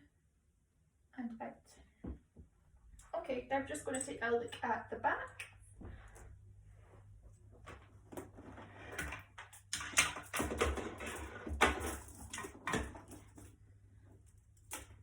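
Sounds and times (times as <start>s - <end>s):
clothing rustling: 5.7s - 9.0s.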